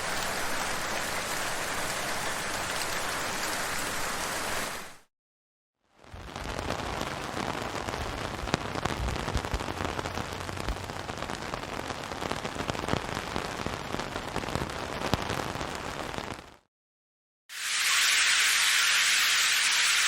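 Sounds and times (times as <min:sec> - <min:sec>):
steady rain falling: 0:00.0 - 0:05.1, 0:06.0 - 0:16.4.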